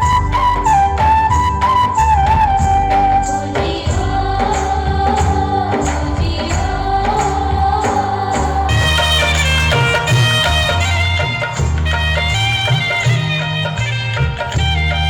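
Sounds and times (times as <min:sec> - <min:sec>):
folk song with wavering vocal: 0:00.0 - 0:13.8
steady drum beat: 0:00.0 - 0:15.0.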